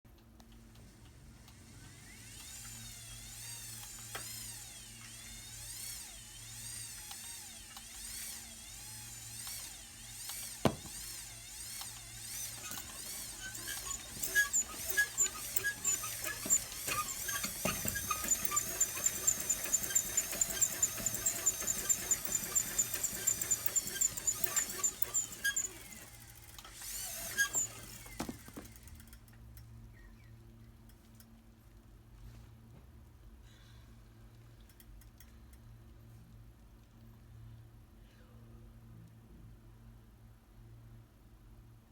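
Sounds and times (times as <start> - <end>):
high squealing whistles: 12.4 - 26.0, 27.0 - 28.1
fast ticks and squeaks: 12.5 - 26.0, 27.2 - 27.8.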